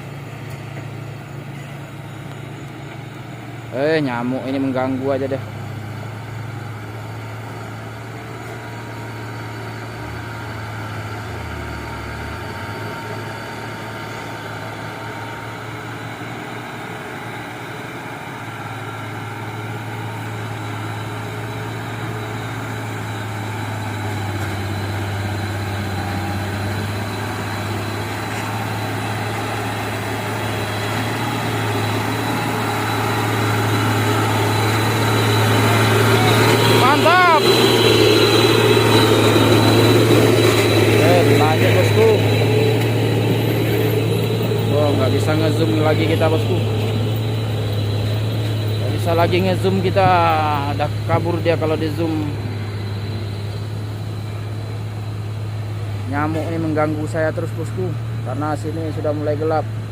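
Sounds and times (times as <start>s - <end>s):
truck diesel engine working: 0.0s - 59.9s.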